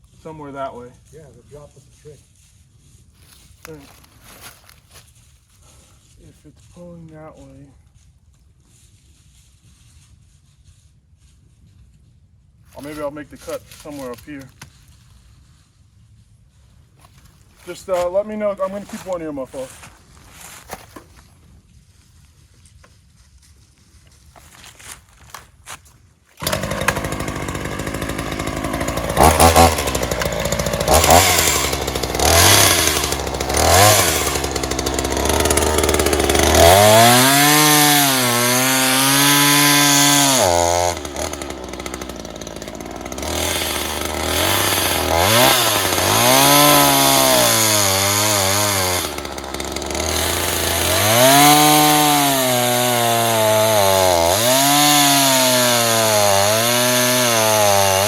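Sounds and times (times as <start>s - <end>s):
chainsaw cutting tree trunk: 26.4s - 58.0s.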